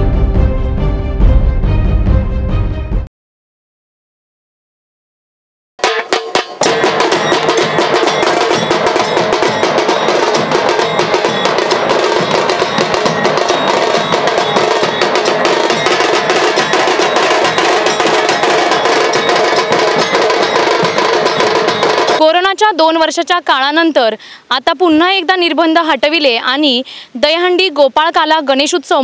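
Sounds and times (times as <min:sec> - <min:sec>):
rapid drum stick strokes: 0:05.8 - 0:22.3
dhol drum beats: 0:05.8 - 0:23.2.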